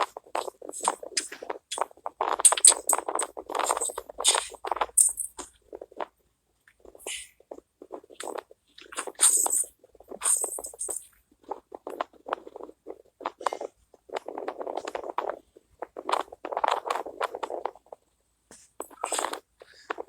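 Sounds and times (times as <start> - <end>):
crackling rustling handling noise: 0.0 - 13.4.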